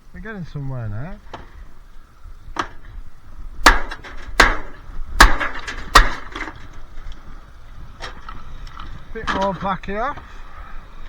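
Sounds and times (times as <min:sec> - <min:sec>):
hammer knocking plastic parts: 0:03.6 - 0:06.6.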